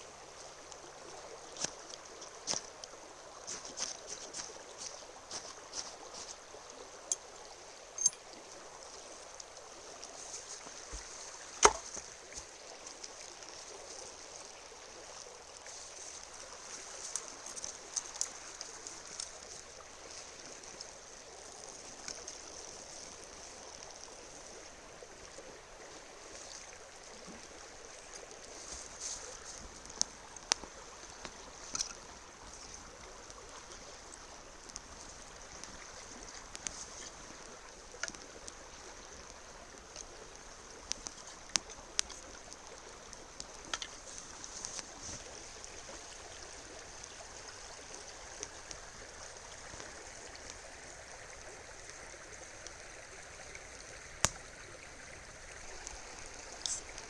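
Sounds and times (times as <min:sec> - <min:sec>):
sharp clicks and knocks: 0:11.6 - 0:12.0.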